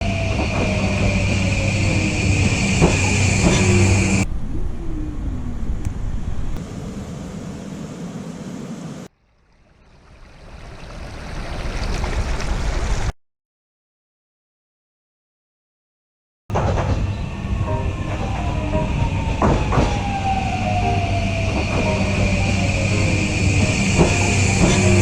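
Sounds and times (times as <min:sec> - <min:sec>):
train running hum: 0:00.0 - 0:04.3, 0:16.5 - 0:25.0
train rumble: 0:00.0 - 0:09.1, 0:16.5 - 0:25.0.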